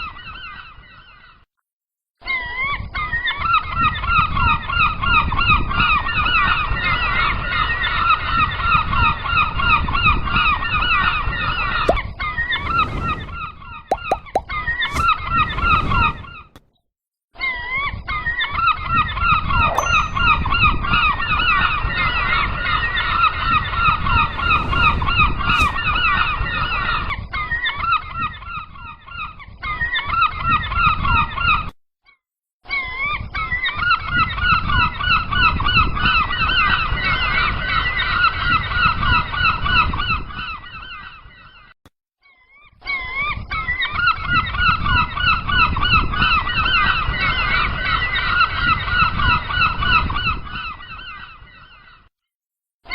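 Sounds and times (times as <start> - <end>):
low rumbling noise: 24.0 - 26.1.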